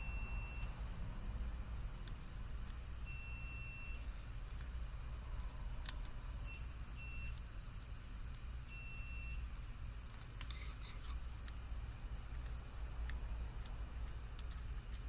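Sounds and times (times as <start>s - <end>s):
multimeter continuity beeps: 0.0s - 0.8s, 3.0s - 4.1s, 6.4s - 7.4s, 8.6s - 9.5s.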